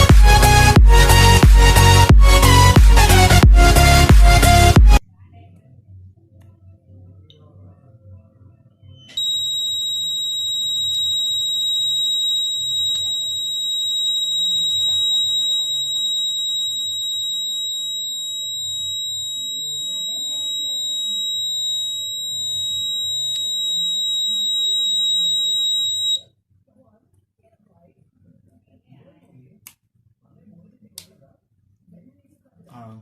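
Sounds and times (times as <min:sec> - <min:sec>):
high-pitched buzzer tone: 0:09.1 - 0:26.2.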